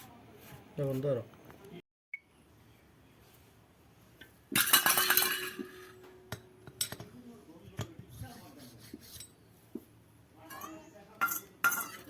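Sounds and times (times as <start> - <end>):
metal tools clinking: 4.5 - 7.1, 10.5 - 12.0
metal-on-metal clattering: 4.5 - 7.1, 10.5 - 12.0.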